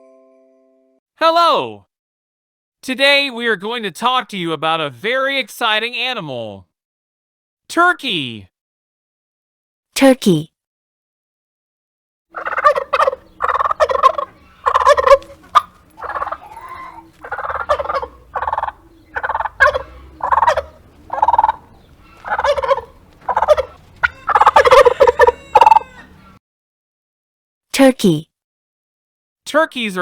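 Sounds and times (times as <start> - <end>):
turkey gobbling: 12.4 - 26.4.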